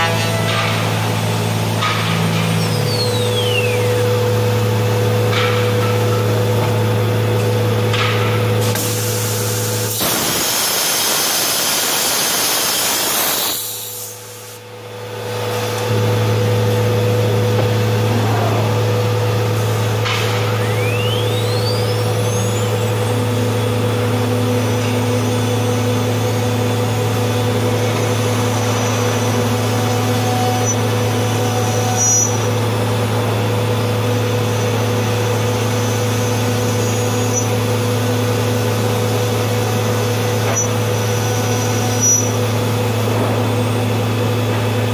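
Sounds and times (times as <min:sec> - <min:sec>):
rising machine whine: 0:00.0 - 0:07.8, 0:14.6 - 0:44.9
cnc router humming: 0:00.0 - 0:13.6, 0:14.2 - 0:44.9
loud hiss: 0:08.7 - 0:14.6.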